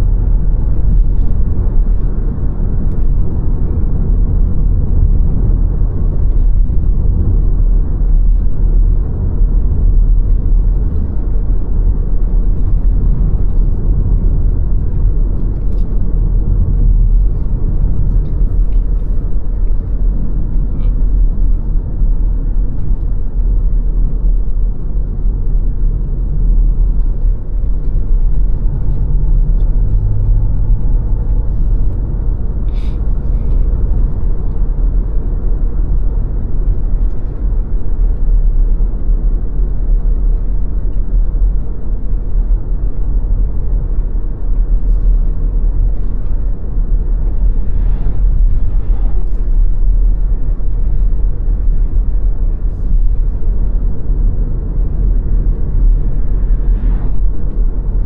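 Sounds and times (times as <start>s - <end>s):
car road rumble: 0.0s - 58.0s.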